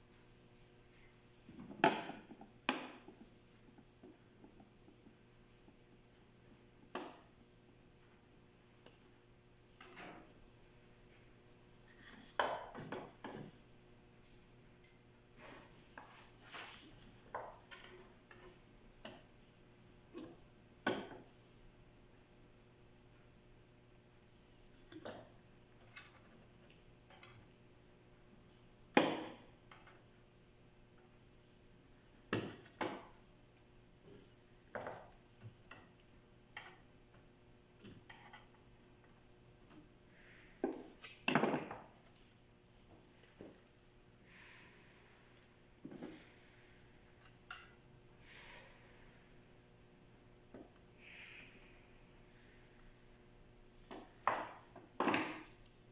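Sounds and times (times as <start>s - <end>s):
faint steady hum: 0.0s - 55.9s
clicks and knocks of parts handled: 53.9s - 55.9s.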